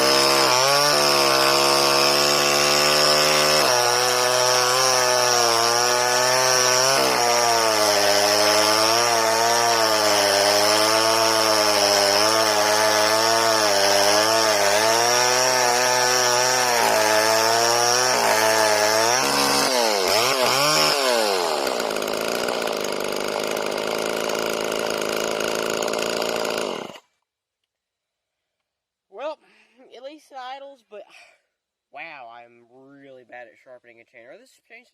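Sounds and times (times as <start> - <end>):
chainsaw cutting wood: 0.0 - 27.2.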